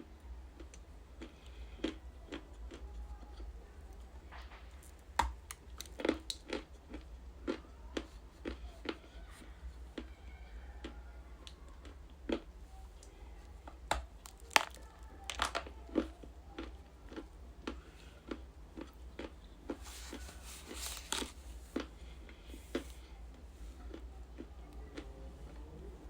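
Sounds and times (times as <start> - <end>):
ice being chewed: 5.5 - 10.1, 14.2 - 23.1.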